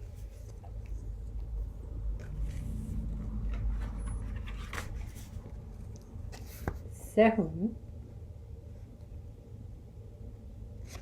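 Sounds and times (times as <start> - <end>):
paper pages rustling: 0.0 - 6.9.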